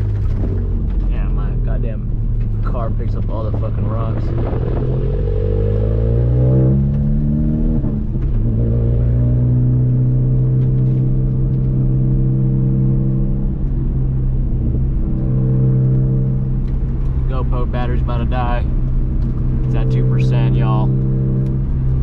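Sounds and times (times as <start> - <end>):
car engine accelerating: 0.0 - 22.0.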